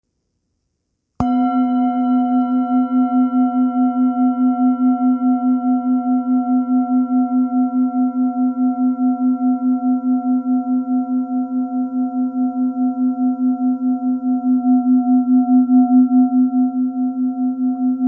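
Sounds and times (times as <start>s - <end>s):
singing bowl ringing: 1.2s - 15.3s.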